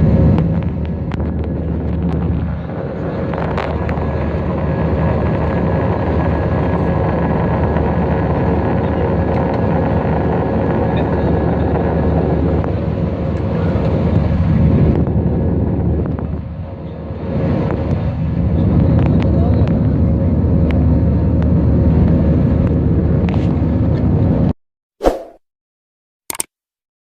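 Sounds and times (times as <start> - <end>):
jet engines running: 0.0 - 24.5
rushing air: 25.0 - 25.4.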